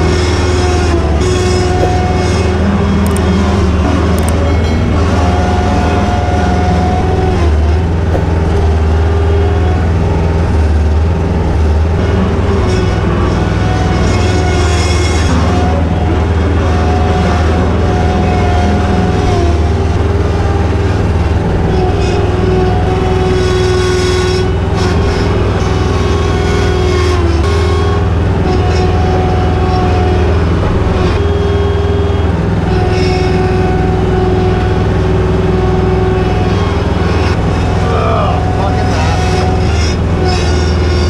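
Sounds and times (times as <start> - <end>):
tractor engine running under load: 0.0 - 41.0.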